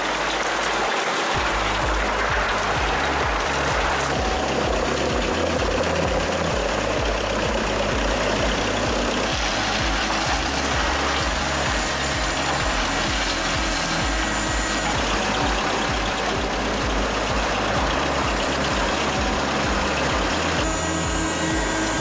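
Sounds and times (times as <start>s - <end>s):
heavy machinery running: 0.0s - 22.0s
background music with bass beat: 1.4s - 22.0s.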